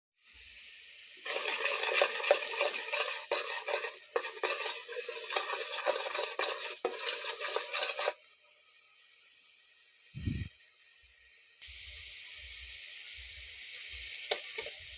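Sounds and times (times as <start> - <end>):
metal utensil scraping a pot: 1.2 - 8.2.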